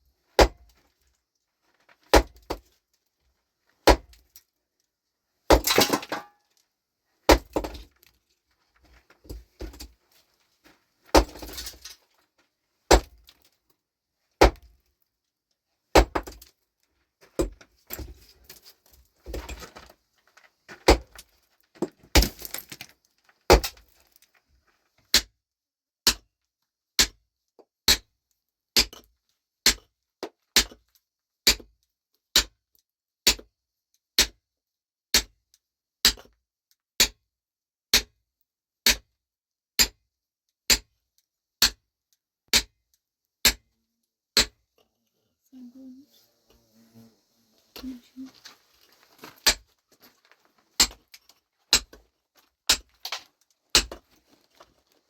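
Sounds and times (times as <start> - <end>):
loose stones rattling: 8.6 - 12.2, 17.3 - 24.4, 48.1 - 55.0.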